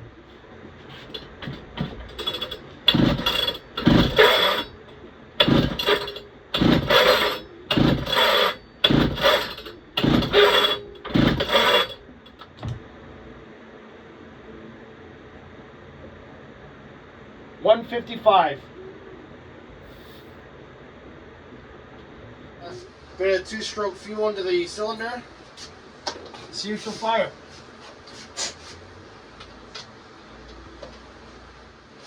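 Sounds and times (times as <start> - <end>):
engine turning over: 1.0 - 4.8, 5.4 - 12.0
chainsaw recoil starter pulls: 1.1 - 4.8, 5.4 - 12.0.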